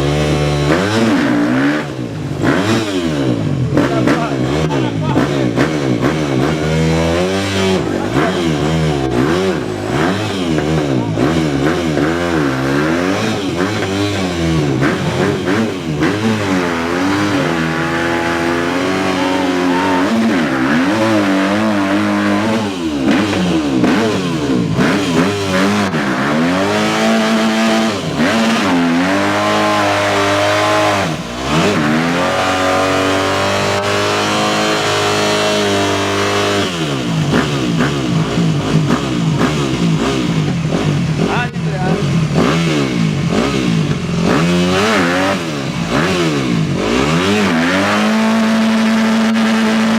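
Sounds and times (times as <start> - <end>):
off-road vehicle engine revving: 0.0 - 49.9.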